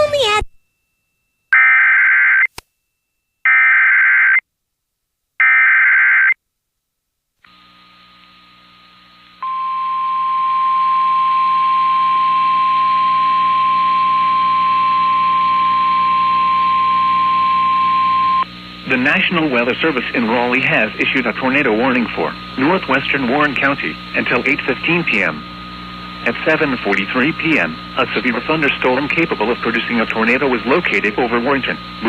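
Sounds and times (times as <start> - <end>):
faint hum: 6.6 - 32.0
steady warning alarm tone: 9.4 - 25.4, 26.2 - 32.0.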